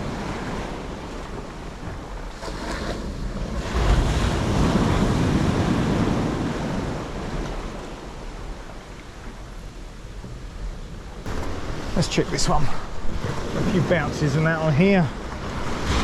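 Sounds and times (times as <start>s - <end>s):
sea waves breaking on shore: 0.0s - 16.0s
wind rumbling on microphone: 0.0s - 16.0s.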